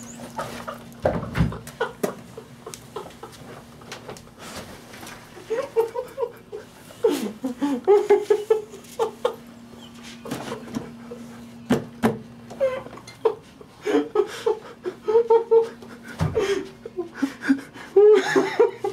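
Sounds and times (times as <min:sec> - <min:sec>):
faint steady hum: 0:00.0 - 0:18.9
stifled giggling and laughter: 0:00.4 - 0:04.1, 0:05.4 - 0:09.7, 0:12.6 - 0:18.9.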